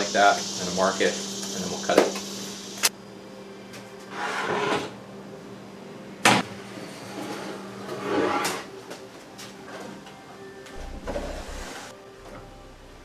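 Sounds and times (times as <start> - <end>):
wooden board scraping on bench: 4.1 - 5.0, 7.0 - 8.7.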